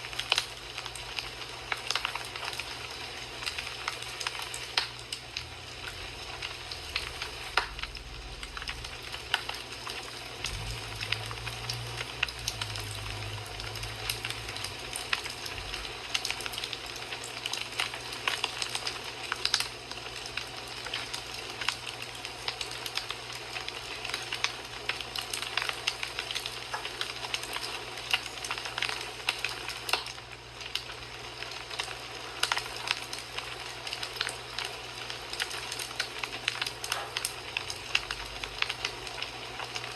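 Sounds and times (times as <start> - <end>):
wood fire crackling and popping: 0.0 - 39.9
low rumble: 6.4 - 16.0.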